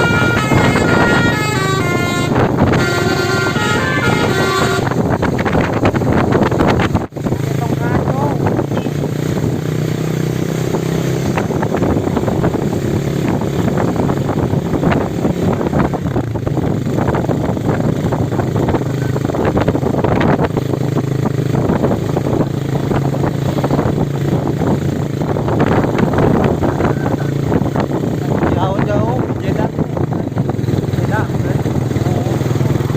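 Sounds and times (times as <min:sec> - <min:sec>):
road traffic rumble and rattle: 0:00.0 - 0:32.9.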